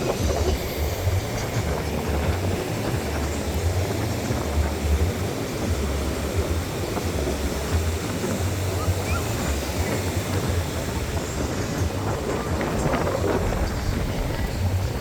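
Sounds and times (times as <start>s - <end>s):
outdoor noise hiss: 0.0s - 15.0s
wind buffeting microphone: 0.0s - 15.0s.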